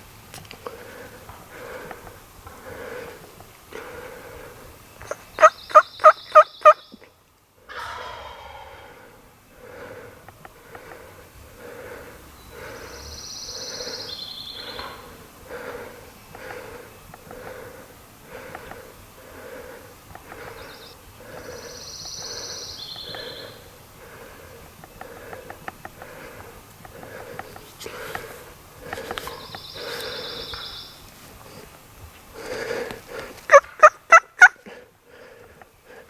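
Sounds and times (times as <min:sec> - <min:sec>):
person breathing softly: 0:00.6 - 0:04.8, 0:07.7 - 0:33.5, 0:34.6 - 0:36.0
turkey gobbling: 0:05.0 - 0:06.8, 0:33.5 - 0:34.6.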